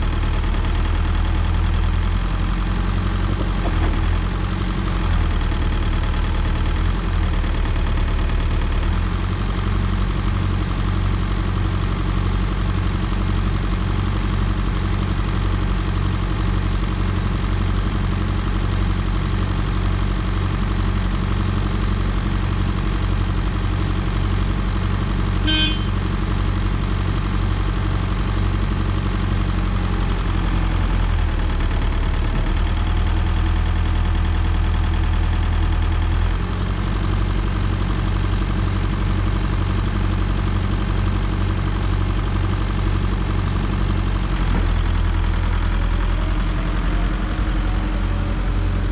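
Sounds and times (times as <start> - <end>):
diesel engine idling: 0.0 - 48.9
short high-pitched beep: 25.5 - 25.9.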